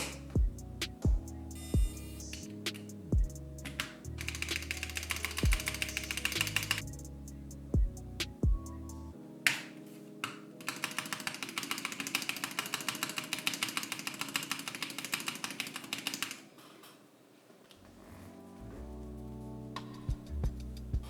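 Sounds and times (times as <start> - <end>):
soft background music: 0.0 - 21.0
mechanical keyboard typing: 3.6 - 7.0, 10.2 - 16.5.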